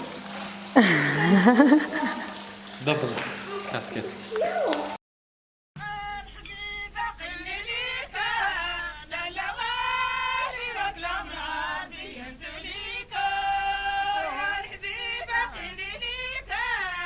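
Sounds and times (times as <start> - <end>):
person singing a melody: 5.8 - 17.0.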